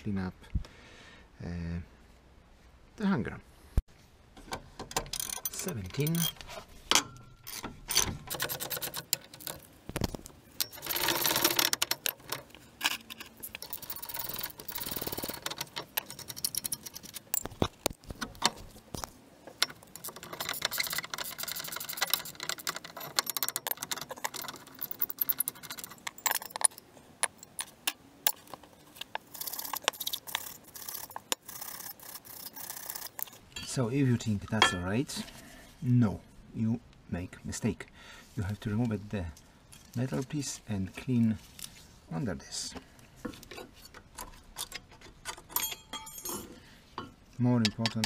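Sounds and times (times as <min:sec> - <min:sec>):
metal brake parts clinking: 0:04.9 - 0:09.7, 0:10.5 - 0:17.9, 0:18.5 - 0:31.8, 0:43.5 - 0:48.0.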